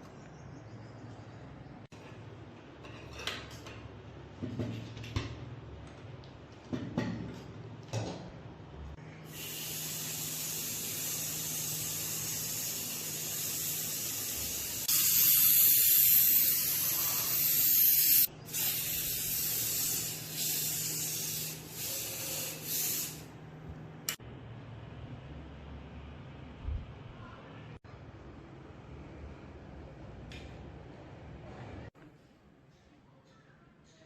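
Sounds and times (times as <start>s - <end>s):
spray nozzle hissing: 9.3s - 23.3s.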